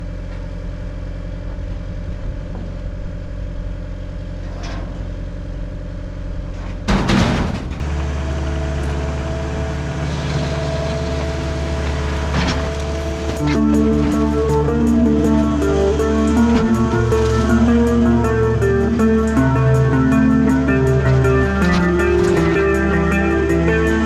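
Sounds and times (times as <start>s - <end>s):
diesel engine idling: 7.6s - 24.0s.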